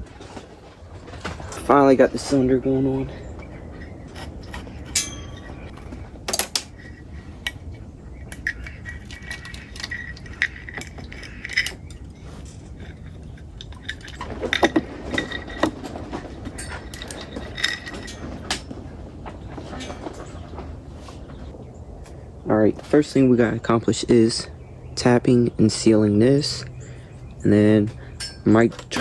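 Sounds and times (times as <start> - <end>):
metal tools clinking and tapping: 1.2 - 24.0, 26.6 - 29.0.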